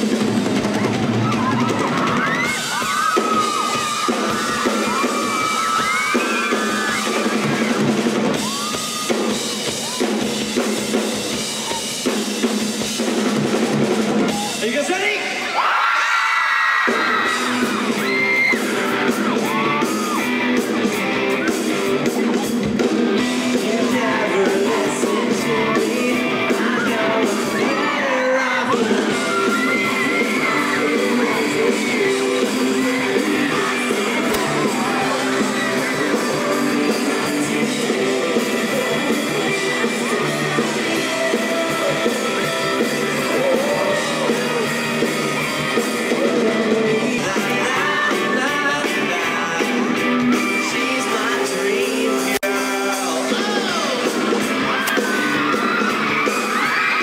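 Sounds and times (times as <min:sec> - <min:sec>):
live band amplified instruments: 0:00.0 - 0:57.0
fans screaming and whooping: 0:00.1 - 0:12.1, 0:13.5 - 0:57.0
electric guitars: 0:16.8 - 0:57.0.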